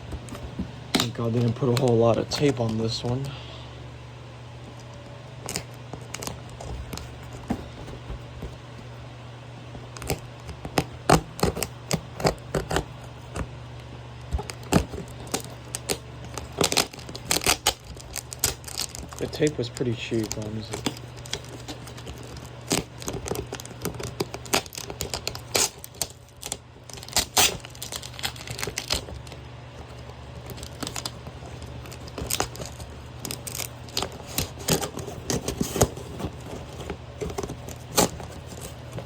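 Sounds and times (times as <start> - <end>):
cardboard box tearing: 14.3 - 39.0.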